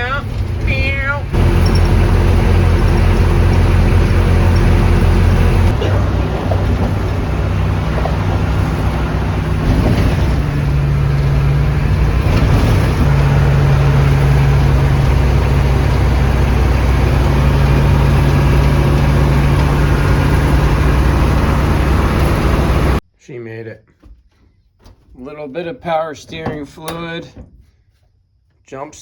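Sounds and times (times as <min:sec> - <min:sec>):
road noise: 0:00.0 - 0:23.0
vehicle engine drone: 0:00.0 - 0:23.0.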